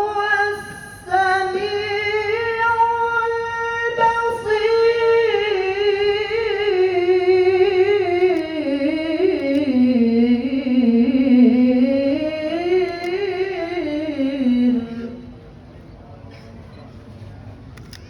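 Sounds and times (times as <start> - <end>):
person reciting melodically: 0.0 - 15.4.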